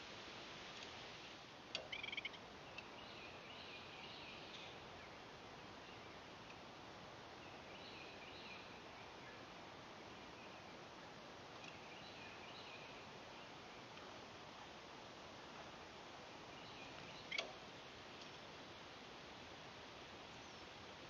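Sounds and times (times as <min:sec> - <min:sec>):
steady hiss: 0:00.0 - 0:21.0
birds chirping: 0:01.8 - 0:05.2, 0:16.4 - 0:17.5.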